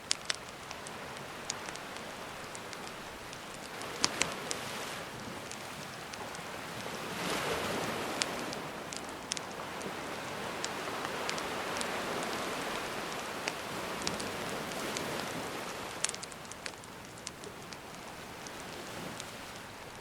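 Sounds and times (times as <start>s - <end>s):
sea waves washing in: 0.0s - 20.0s
wood fire crackling: 0.0s - 20.0s.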